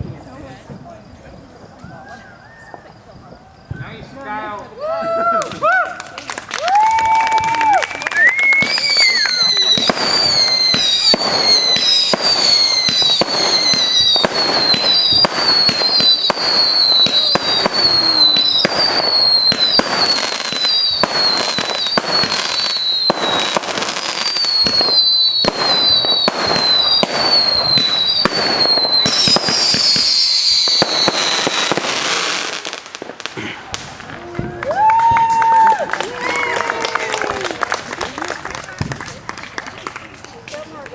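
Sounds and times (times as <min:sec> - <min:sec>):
fireworks bangs and crackling: 0:00.0 - 0:40.9
firework whistles: 0:06.5 - 0:37.0.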